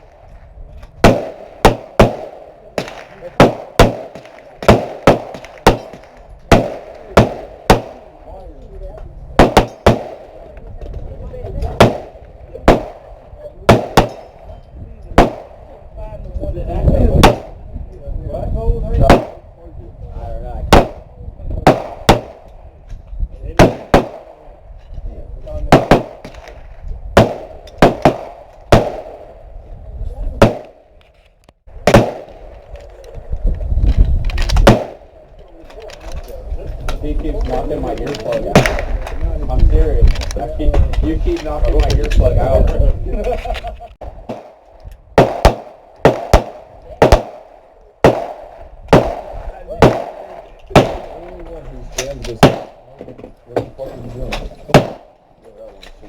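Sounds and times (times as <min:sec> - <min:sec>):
gunshots with ringing echo: 0:01.0 - 0:08.2, 0:09.4 - 0:10.4, 0:11.7 - 0:14.5, 0:15.2 - 0:15.8, 0:17.1 - 0:17.6, 0:19.0 - 0:19.4, 0:20.7 - 0:22.6, 0:23.6 - 0:24.6, 0:25.7 - 0:29.4, 0:30.4 - 0:30.9, 0:31.8 - 0:32.5, 0:34.6 - 0:35.2, 0:38.5 - 0:39.0, 0:44.2 - 0:51.3, 0:52.4 - 0:52.9, 0:54.7 - 0:55.2.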